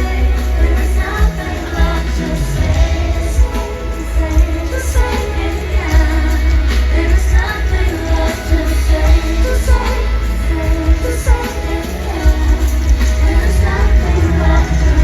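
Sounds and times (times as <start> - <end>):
heavy pulsing bass beat: 0.0 - 15.0
pop dance music: 0.0 - 15.0
woman singing: 0.0 - 15.0.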